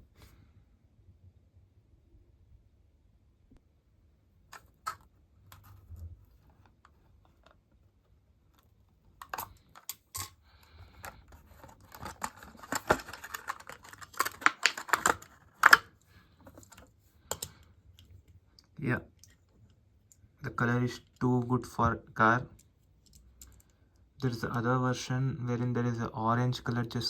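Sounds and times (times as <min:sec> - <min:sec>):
plastic packaging crackling: 0:10.9 - 0:16.0.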